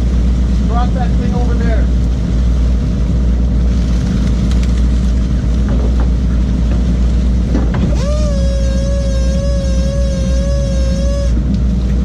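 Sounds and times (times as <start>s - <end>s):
boat engine droning: 0.0s - 12.0s
held high wavering tone: 7.9s - 11.4s.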